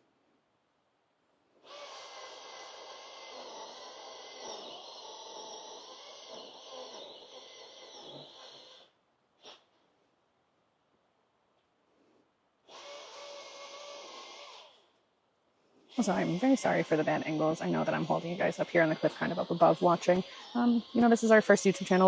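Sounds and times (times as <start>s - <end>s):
chainsaw running: 1.7s - 8.8s, 16.0s - 22.0s.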